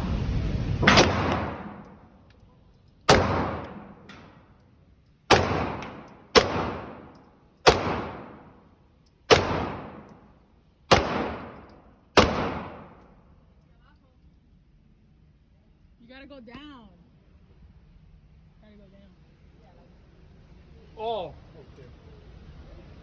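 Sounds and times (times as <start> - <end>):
gunshots with long echo: 0.8 - 2.2, 3.1 - 4.5, 5.3 - 8.7, 9.3 - 10.3, 10.9 - 13.2.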